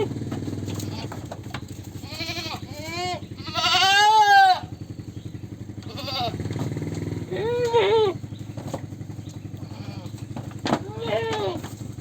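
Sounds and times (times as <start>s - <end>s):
low engine-like drone: 0.0s - 12.0s
goats bleating: 0.7s - 4.8s, 5.8s - 6.4s, 7.3s - 8.2s, 9.6s - 11.8s.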